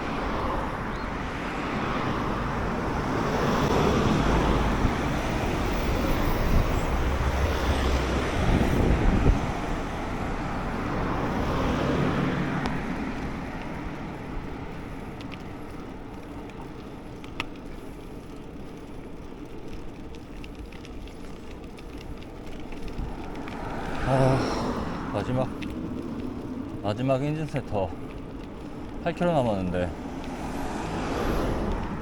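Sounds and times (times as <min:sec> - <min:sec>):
passing vehicle hum: 0:00.0 - 0:32.0
traffic and wind noise: 0:00.0 - 0:32.0.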